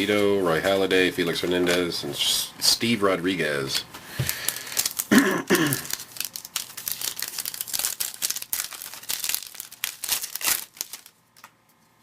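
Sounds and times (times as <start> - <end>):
plastic wrapper crinkling and tearing: 4.3 - 11.7.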